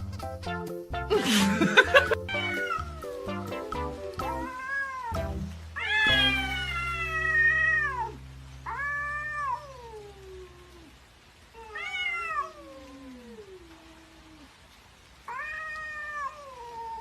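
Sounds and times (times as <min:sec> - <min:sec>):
cat meowing: 0:02.3 - 0:03.2, 0:04.2 - 0:14.6, 0:15.2 - 0:17.0.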